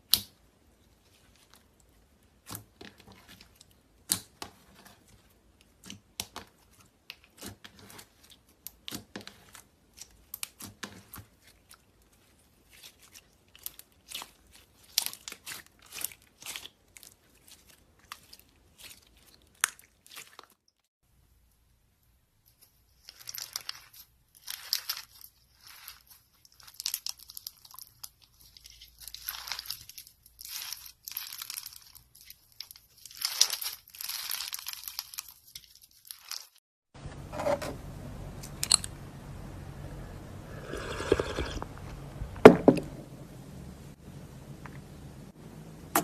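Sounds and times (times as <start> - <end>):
slime crackling and popping: 32.6 - 36.6
steady hum: 37.0 - 46.0.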